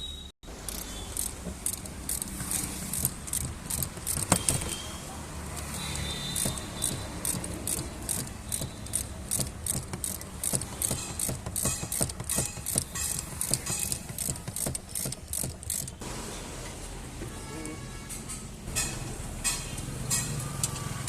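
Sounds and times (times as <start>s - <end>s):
metallic clinking and rattling: 6.4s - 16.0s.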